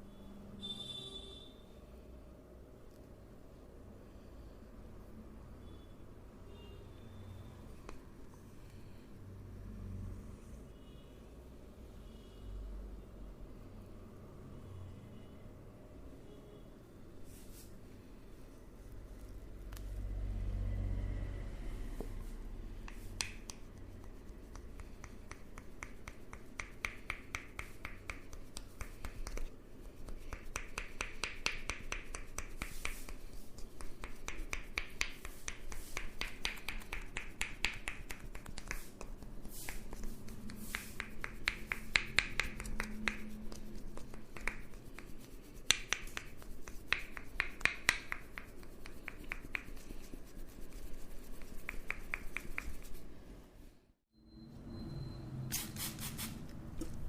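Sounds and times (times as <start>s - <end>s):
hands tapping in massage: 22.8s - 53.0s.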